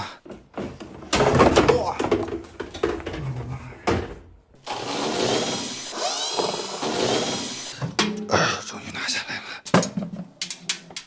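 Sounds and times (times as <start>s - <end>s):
machine parts knocking and clattering: 4.6s - 8.3s, 9.7s - 11.0s.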